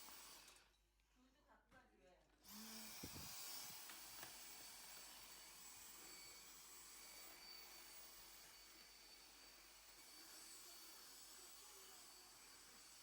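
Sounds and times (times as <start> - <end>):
vacuum cleaner running: 0.0 - 0.6, 2.4 - 12.5.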